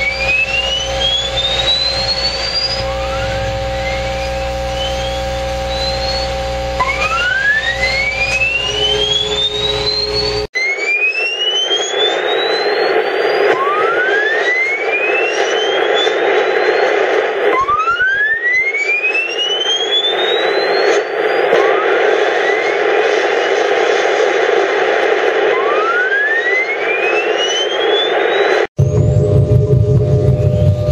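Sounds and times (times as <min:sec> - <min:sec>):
radio static: 0:00.0 - 0:10.5, 0:11.3 - 0:28.7
steady humming tones: 0:00.0 - 0:10.5
rising whistling radio tones: 0:00.0 - 0:30.9.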